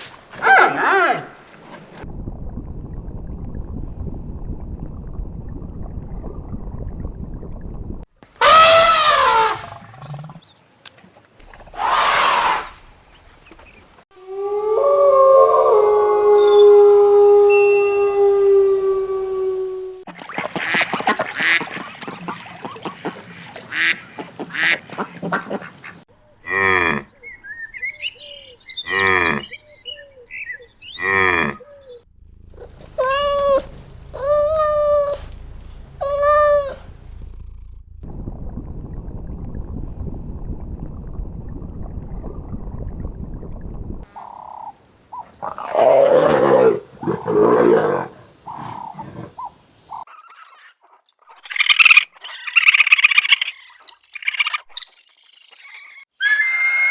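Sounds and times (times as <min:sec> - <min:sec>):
steady animal calls: 0:00.3 - 0:02.0, 0:11.6 - 0:13.8, 0:28.8 - 0:37.5
loud animal call: 0:00.4 - 0:01.4, 0:08.4 - 0:09.9, 0:11.6 - 0:12.9, 0:32.6 - 0:37.1
even hiss: 0:11.4 - 0:13.8, 0:32.4 - 0:37.7
short animal calls: 0:32.6 - 0:37.6.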